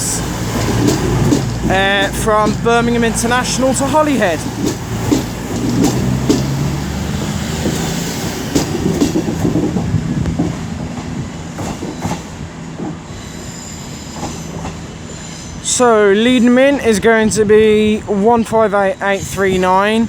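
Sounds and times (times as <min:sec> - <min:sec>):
wheels clicking over rail joints: 0:00.0 - 0:15.5
train engine hum: 0:00.0 - 0:20.0
high brake squeal: 0:13.1 - 0:16.8.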